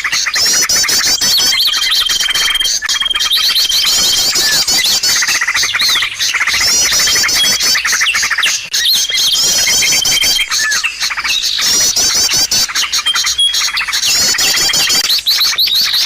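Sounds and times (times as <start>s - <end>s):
small birds chirping and trilling: 0.0s - 16.0s
high whistle: 8.8s - 10.8s.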